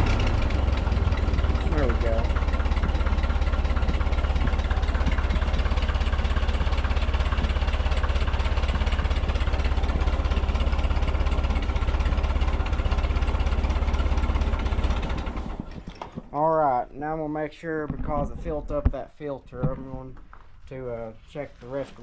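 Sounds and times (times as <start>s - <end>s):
tractor engine running: 0.0s - 21.4s.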